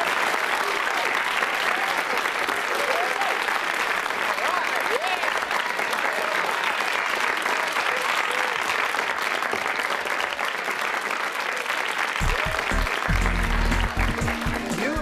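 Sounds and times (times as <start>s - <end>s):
audience applauding: 0.0s - 15.0s
music with pulsing beat: 12.2s - 15.0s.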